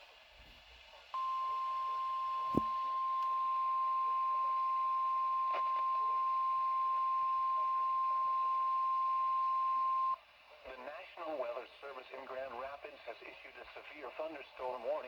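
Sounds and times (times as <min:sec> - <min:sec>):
steady high warning beep: 0:01.2 - 0:10.1.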